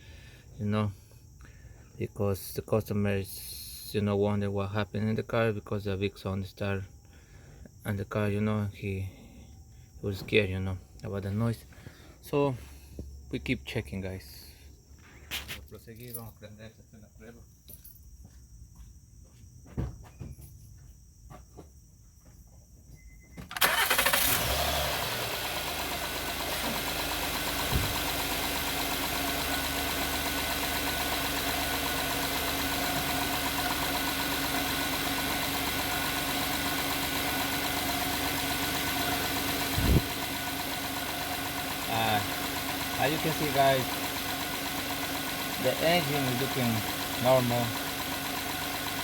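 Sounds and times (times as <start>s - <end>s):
car engine starting and idling: 23.4s - 49.0s
short thump: 27.7s - 28.0s.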